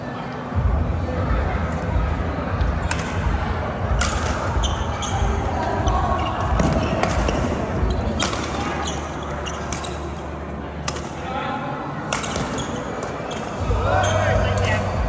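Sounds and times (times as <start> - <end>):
court shoes squeaking: 2.7 - 11.2, 12.1 - 15.0
racket striking shuttlecock: 2.9 - 3.2, 5.6 - 9.0, 10.8 - 11.2, 12.1 - 13.5.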